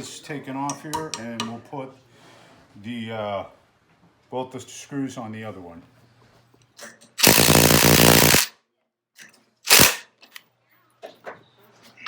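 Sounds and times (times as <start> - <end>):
impact driver hammering bolt: 9.7 - 10.0.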